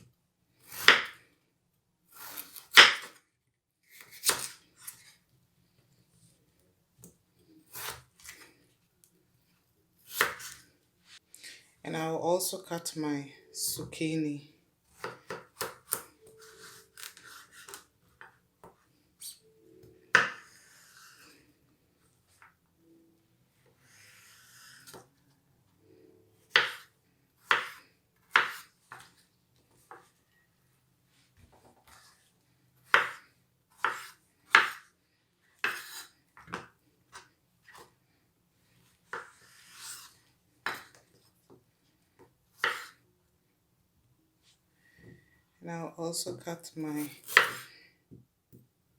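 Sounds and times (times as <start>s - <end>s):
knife chopping on cutting board: 0.7s - 1.2s, 2.2s - 3.2s, 26.5s - 29.0s, 32.9s - 33.2s, 33.8s - 34.8s, 35.6s - 36.6s, 42.6s - 43.0s, 47.2s - 47.6s
knife scraping cutting board: 2.1s - 3.2s, 15.0s - 17.9s, 20.2s - 21.3s, 23.8s - 25.0s, 27.5s - 29.1s, 33.8s - 34.9s, 35.6s - 36.6s, 39.1s - 41.0s, 42.6s - 43.0s, 47.0s - 47.7s.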